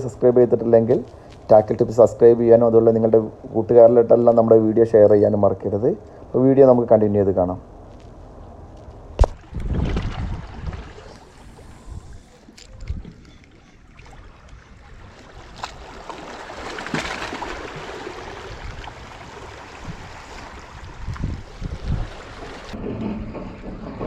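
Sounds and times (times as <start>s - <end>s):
wind noise on microphone: 9.1s - 13.4s, 18.4s - 24.0s
water washing: 9.6s - 22.9s.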